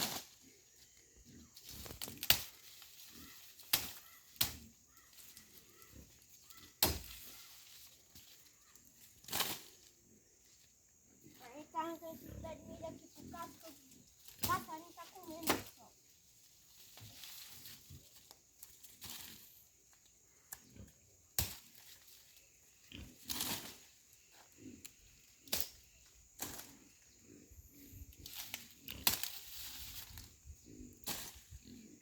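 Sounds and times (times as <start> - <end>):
dry corn stalks rustling and tearing: 0.0 - 0.6, 1.6 - 9.9, 13.3 - 19.6, 21.4 - 24.0, 28.2 - 30.4.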